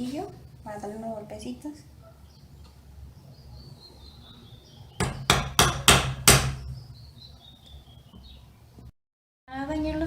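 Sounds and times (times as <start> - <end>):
hammer tapping on metal: 5.0 - 6.8.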